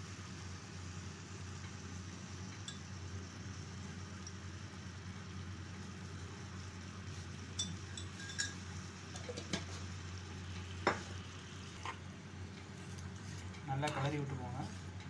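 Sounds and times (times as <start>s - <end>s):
utensil clinking against dish: 7.6s - 9.7s.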